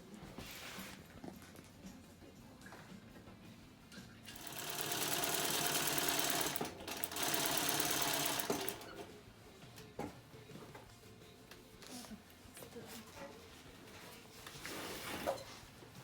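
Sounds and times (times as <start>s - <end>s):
sewing machine running: 4.3s - 9.0s.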